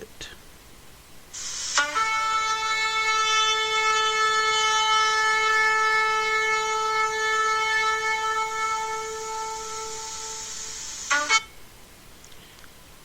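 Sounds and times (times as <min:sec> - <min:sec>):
trumpet holding a long note: 0:01.4 - 0:11.6.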